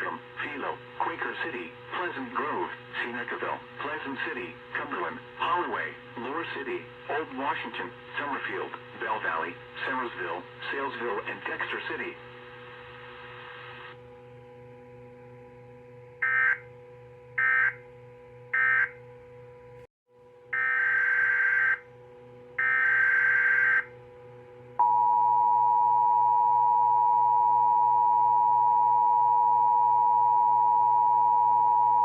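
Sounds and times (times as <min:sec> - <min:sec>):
faint receiver hum: 0:00.0 - 0:19.8, 0:20.6 - 0:32.0
harsh buzzing data bursts: 0:16.2 - 0:16.6, 0:18.5 - 0:18.9, 0:20.6 - 0:21.8, 0:22.6 - 0:23.9
two-tone attention signal: 0:24.8 - 0:32.0.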